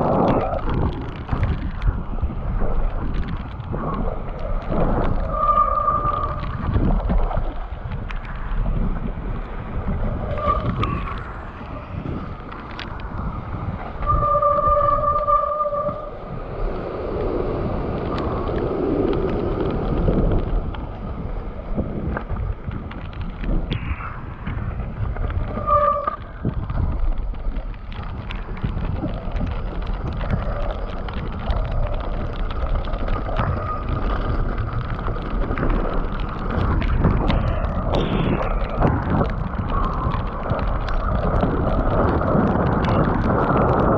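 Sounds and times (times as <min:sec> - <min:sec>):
bike rattling over ground: 0:00.0 - 0:43.9
heavy rain: 0:00.0 - 0:43.9
wind buffeting microphone: 0:00.0 - 0:43.9
steady high squeal: 0:05.1 - 0:06.6, 0:13.9 - 0:16.5, 0:23.7 - 0:26.4.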